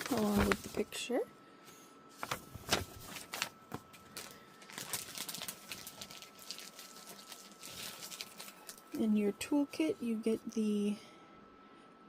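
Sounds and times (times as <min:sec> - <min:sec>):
paper rustling: 0:00.0 - 0:00.9, 0:02.1 - 0:08.9.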